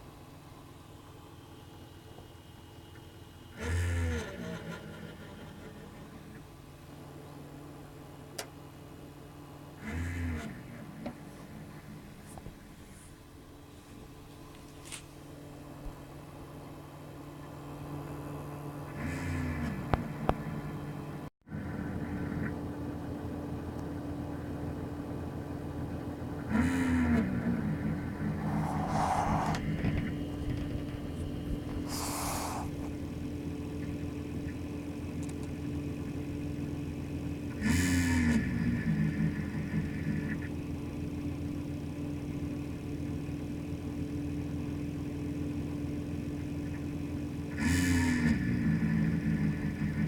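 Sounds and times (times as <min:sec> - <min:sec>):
power supply fan droning: 0:00.0 - 0:43.0
loud rising and falling tone: 0:27.8 - 0:30.2.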